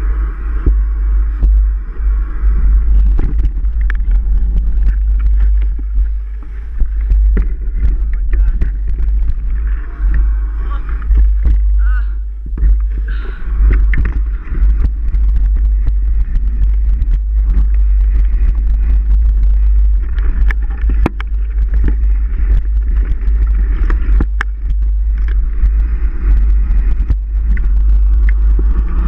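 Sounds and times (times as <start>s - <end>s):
bike rattling over rough ground: 0.0s - 29.0s
wind buffeting microphone: 0.0s - 29.0s.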